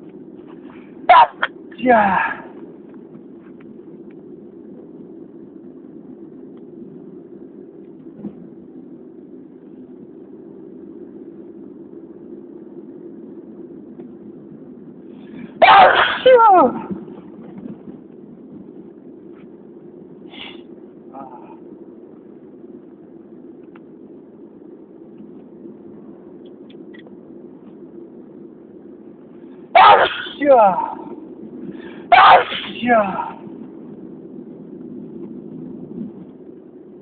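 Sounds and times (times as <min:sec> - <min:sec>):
steady low background noise: 0:00.0 - 0:37.0
person sneezing loudly: 0:01.1 - 0:02.6, 0:15.6 - 0:16.9, 0:29.8 - 0:31.1, 0:31.8 - 0:33.4.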